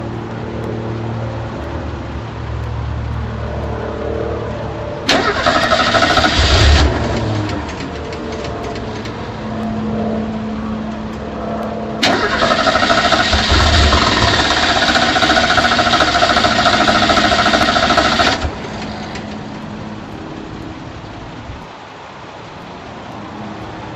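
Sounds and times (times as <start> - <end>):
car starter cranking engine: 5.1 - 9.3, 12.0 - 19.6.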